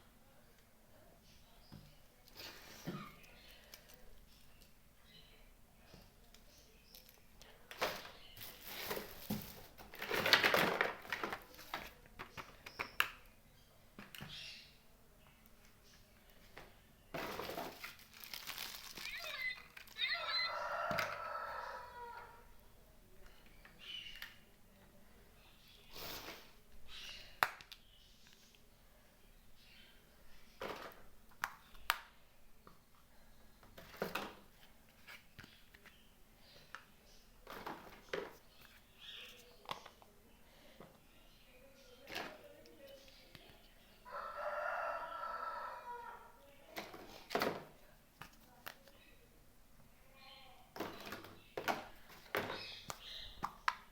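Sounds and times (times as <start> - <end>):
plastic toy pieces rustling: 6.9 - 12.6, 17.2 - 21.2
rooster-like crowing: 19.1 - 22.5, 44.1 - 46.3.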